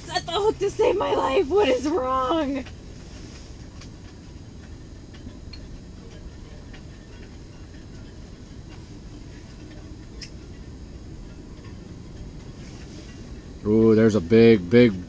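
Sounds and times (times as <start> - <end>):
faint ticks and clicks: 2.5 - 14.1.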